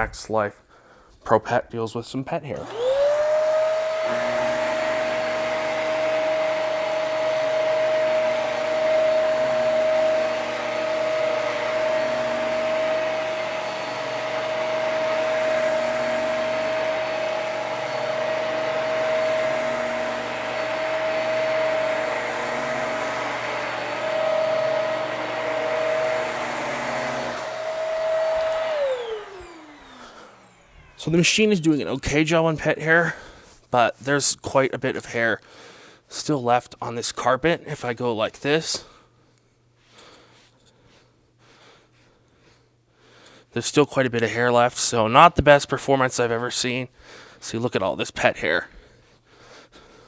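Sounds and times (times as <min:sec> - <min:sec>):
vacuum cleaner motor whine: 0:02.6 - 0:31.7.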